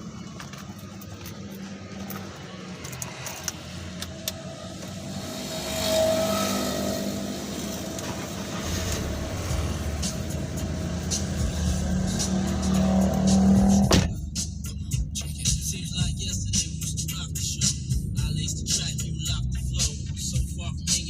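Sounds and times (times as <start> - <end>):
car engine running: 0.0 - 21.0.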